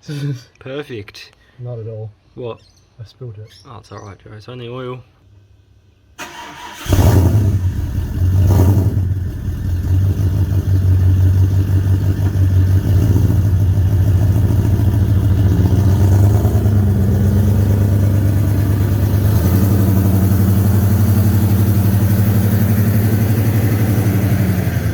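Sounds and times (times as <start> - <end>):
car engine starting and idling: 6.2 - 24.9.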